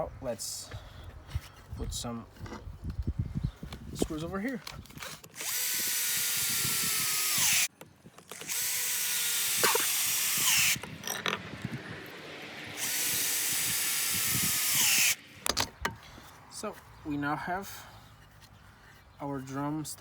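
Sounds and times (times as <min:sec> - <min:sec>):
power drill driving screws: 0:05.2 - 0:15.2.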